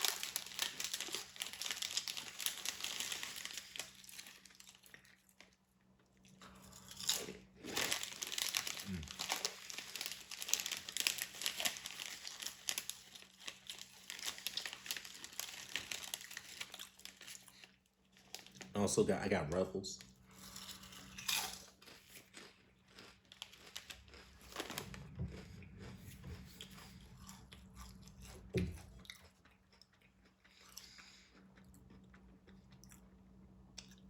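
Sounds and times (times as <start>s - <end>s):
wrapper crinkling: 0.0s - 5.1s, 7.0s - 18.7s, 23.4s - 25.0s
chewing and crunching food: 0.0s - 19.0s, 20.0s - 34.0s.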